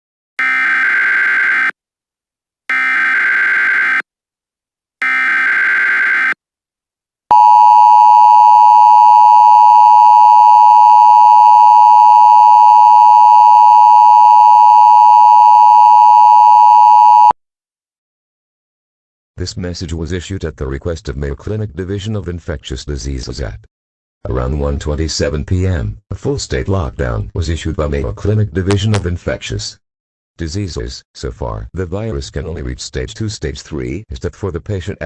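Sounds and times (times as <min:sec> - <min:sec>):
steady two-tone attention signal: 0:07.3 - 0:17.3.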